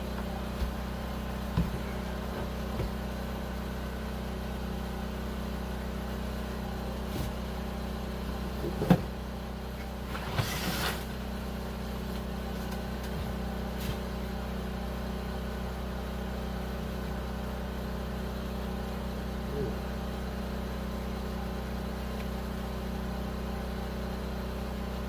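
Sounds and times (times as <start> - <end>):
engine idling: 0.0 - 10.4.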